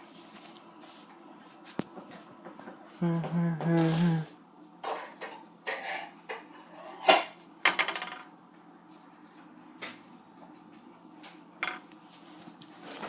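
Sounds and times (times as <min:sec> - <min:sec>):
dishes and utensils clinking: 0:04.8 - 0:08.0.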